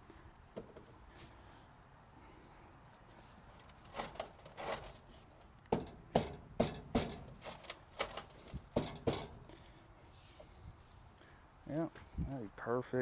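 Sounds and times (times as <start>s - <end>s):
hard objects knocking and clattering: 5.7s - 9.6s.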